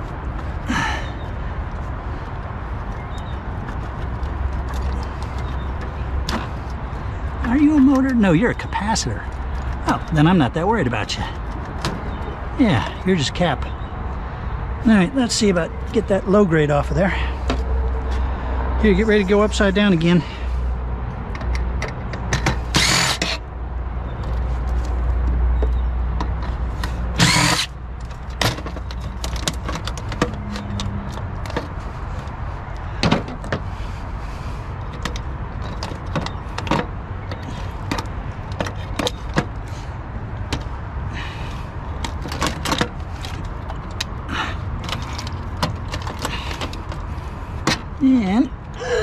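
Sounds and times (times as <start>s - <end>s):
hand tools clicking on metal and plastic: 24.3s - 33.6s, 34.9s - 39.6s, 42.0s - 47.8s.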